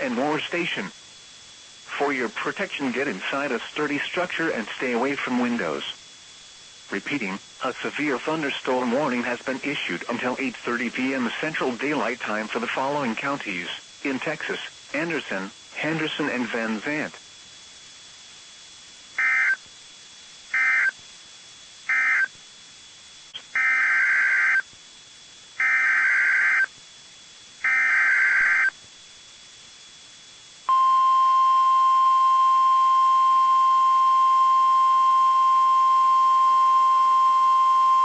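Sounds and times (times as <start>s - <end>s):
warbling data tone bursts: 19.2s - 19.6s, 20.5s - 21.0s, 21.9s - 22.3s, 23.6s - 24.7s, 25.6s - 26.7s, 27.6s - 28.8s.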